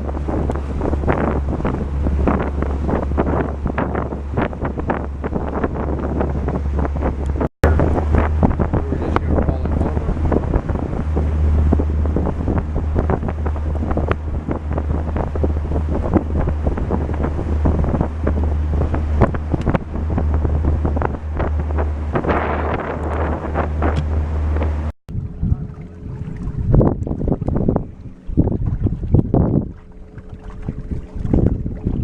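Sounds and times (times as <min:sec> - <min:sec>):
boat motor drone: 0:00.0 - 0:32.0
hull slapping on waves: 0:00.0 - 0:32.0
wind buffeting microphone: 0:00.0 - 0:32.0.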